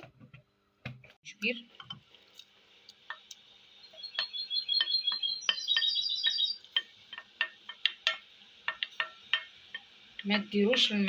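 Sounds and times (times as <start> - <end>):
high chirping notes: 3.8 - 6.8.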